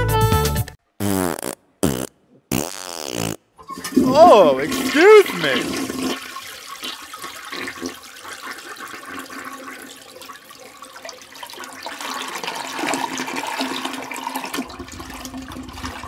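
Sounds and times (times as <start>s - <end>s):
toilet flushing: 3.6s - 16.0s.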